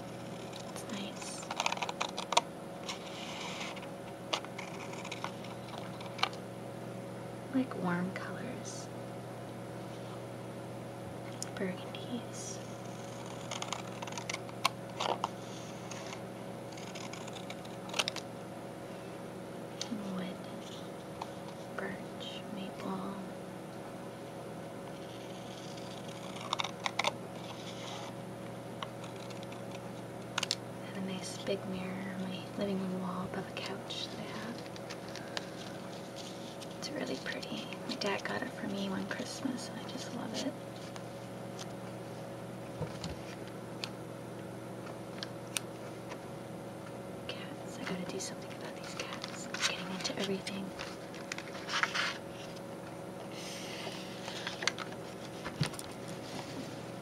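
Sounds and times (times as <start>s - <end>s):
scissors cutting thick paper: 0.0s - 6.3s, 12.8s - 18.2s, 24.9s - 28.2s, 28.8s - 29.8s
steady low hum: 0.0s - 57.0s
papery rustle: 48.8s - 52.6s.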